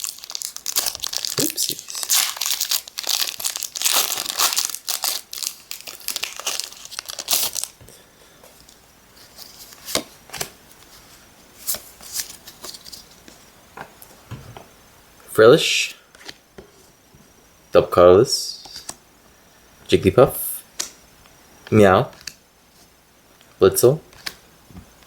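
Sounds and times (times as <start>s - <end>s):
foil wrapper crinkling and tearing: 0.0s - 7.8s.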